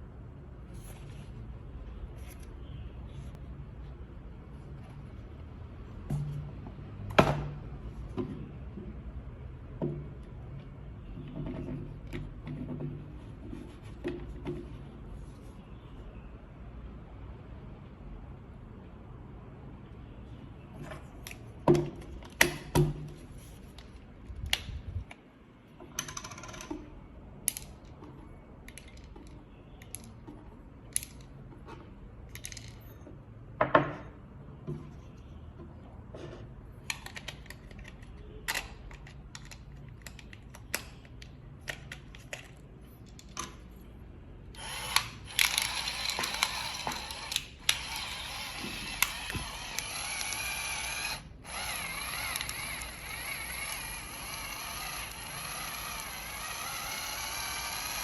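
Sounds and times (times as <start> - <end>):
electric pepper grinder motor: 44.6 - 58.0.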